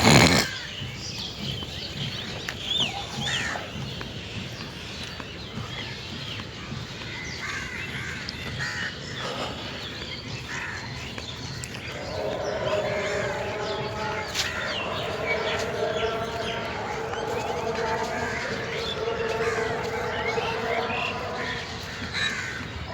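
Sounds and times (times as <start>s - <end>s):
birds chirping: 0.0s - 22.9s
louder lower bird call: 11.9s - 22.9s.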